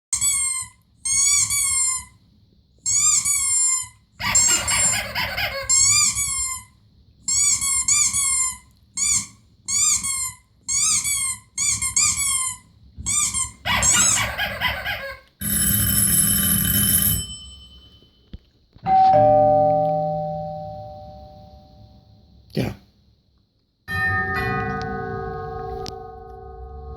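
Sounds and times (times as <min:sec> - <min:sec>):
doorbell chime: 0:16.0 - 0:18.3, 0:18.9 - 0:22.0, 0:23.9 - 0:26.9.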